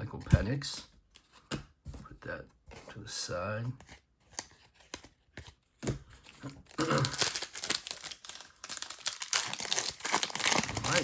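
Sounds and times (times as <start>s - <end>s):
plastic wrapper crinkling and tearing: 6.2s - 11.0s.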